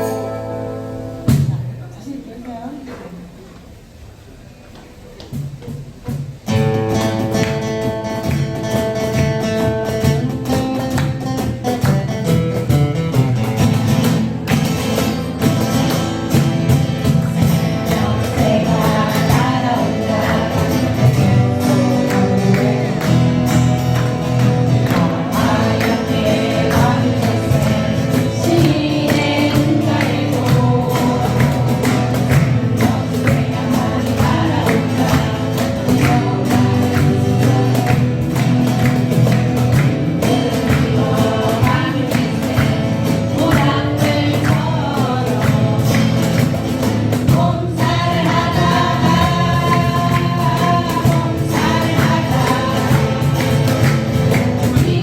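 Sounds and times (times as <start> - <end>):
strummed acoustic guitars: 0.0 - 2.1, 4.5 - 55.0
voices singing together: 13.6 - 55.0.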